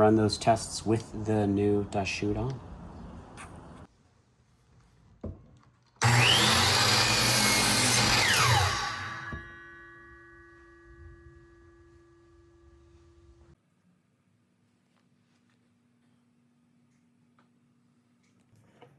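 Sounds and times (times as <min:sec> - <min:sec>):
saw cutting through wood: 0:06.0 - 0:10.0
miter saw whining: 0:06.0 - 0:10.9
faint steady hum: 0:09.4 - 0:18.4.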